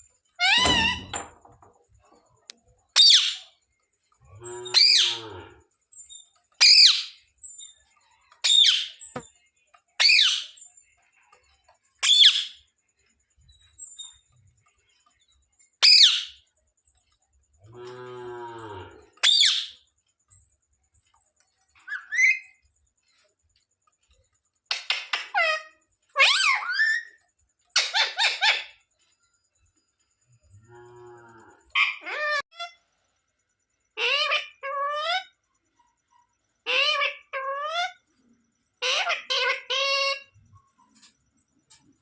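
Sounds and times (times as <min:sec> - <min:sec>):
parrot squawking: 0:00.4 - 0:01.2, 0:04.7 - 0:05.2, 0:06.6 - 0:07.2, 0:15.8 - 0:16.4, 0:19.2 - 0:19.8, 0:21.8 - 0:22.6, 0:24.9 - 0:27.2, 0:27.8 - 0:28.7, 0:31.7 - 0:32.8, 0:34.0 - 0:35.3, 0:36.7 - 0:38.0, 0:38.8 - 0:40.3
parrot low pitched vocal sound: 0:04.4 - 0:05.6.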